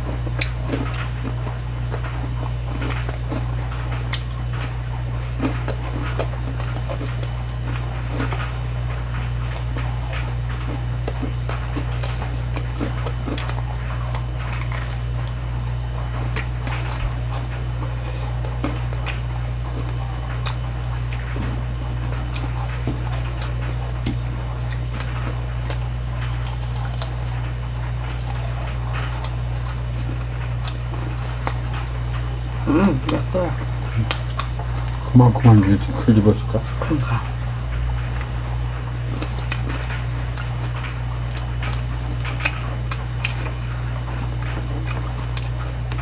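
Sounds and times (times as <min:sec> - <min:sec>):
people chewing: 0:00.0 - 0:46.0
steady low hum: 0:00.0 - 0:46.0
squishy mouth sounds: 0:10.7 - 0:46.0.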